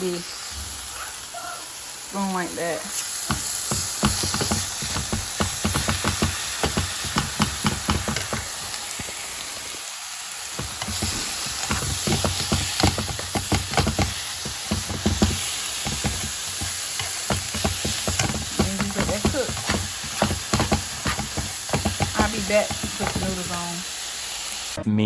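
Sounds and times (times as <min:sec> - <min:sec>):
meat sizzling in a frying pan: 0:00.0 - 0:24.8
spoon scraping a pan: 0:03.0 - 0:09.2, 0:10.6 - 0:23.8.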